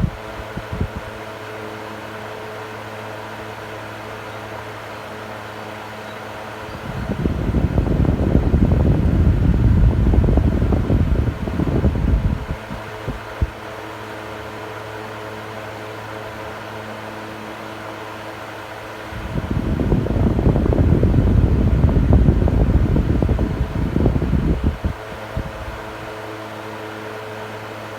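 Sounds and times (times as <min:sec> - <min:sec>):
wind buffeting microphone: 0:00.0 - 0:01.2, 0:06.7 - 0:13.7, 0:19.1 - 0:26.2
electric fan motor hum: 0:00.0 - 0:27.9
fan click: 0:06.6 - 0:13.8, 0:19.0 - 0:26.3.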